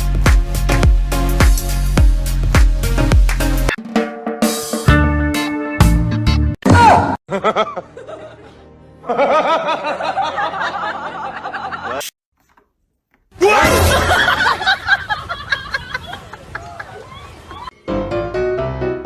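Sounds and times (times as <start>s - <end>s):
music: 0.0s - 12.0s, 17.7s - 19.0s
laughter: 7.3s - 12.1s, 13.7s - 17.7s.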